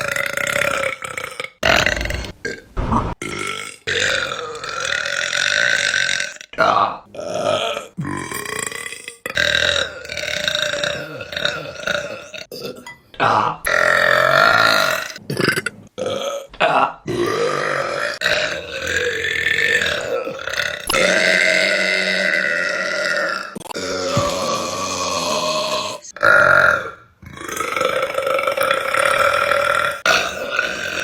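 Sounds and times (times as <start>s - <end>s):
women burping: 14.3s - 31.0s.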